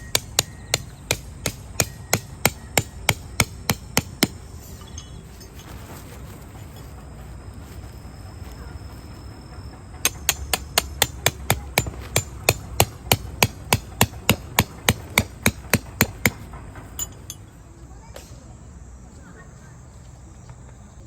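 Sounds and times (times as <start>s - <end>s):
hammer striking tent peg: 0.0s - 4.5s, 10.0s - 17.1s.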